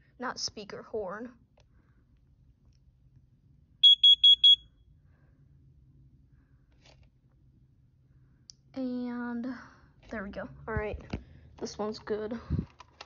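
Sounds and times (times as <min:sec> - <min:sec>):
alarm high-pitched beeps: 0:03.8 - 0:04.6.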